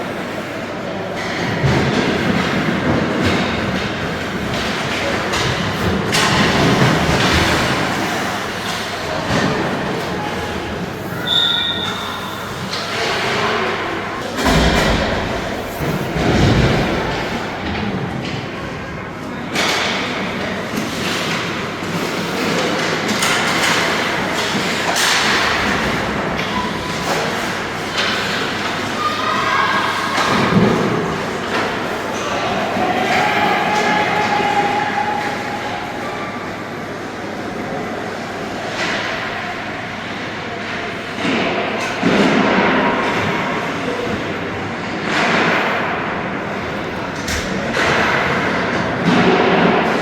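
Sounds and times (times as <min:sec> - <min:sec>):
sticks and puck hitting boards: 0:20.7 - 0:26.2, 0:41.2 - 0:43.6.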